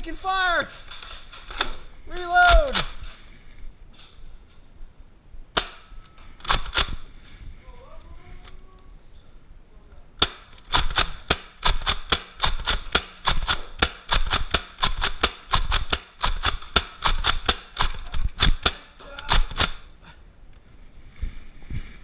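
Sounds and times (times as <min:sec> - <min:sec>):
toy blasters clacking: 0:10.2 - 0:19.8.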